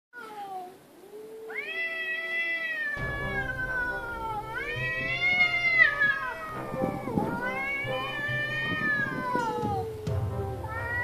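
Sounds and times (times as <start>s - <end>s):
cats yowling: 0.2s - 11.0s
low rough sound: 3.0s - 11.0s.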